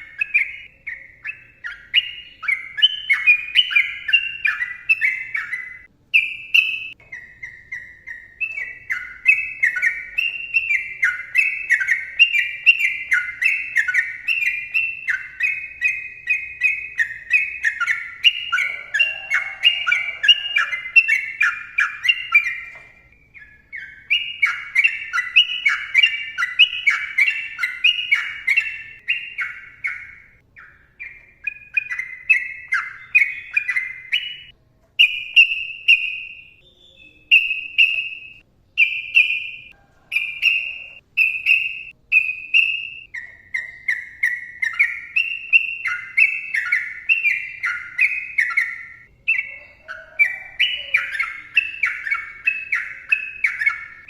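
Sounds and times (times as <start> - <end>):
bird singing rapid notes: 0.0 - 54.0.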